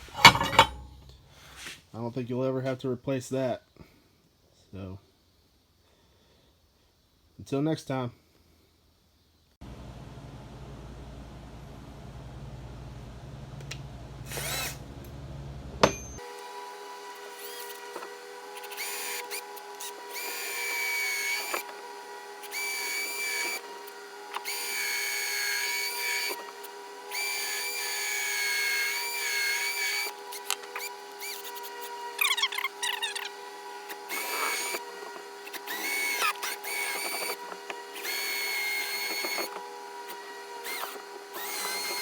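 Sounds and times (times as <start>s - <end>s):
power drill whining: 14.2s - 15.2s, 15.8s - 42.0s.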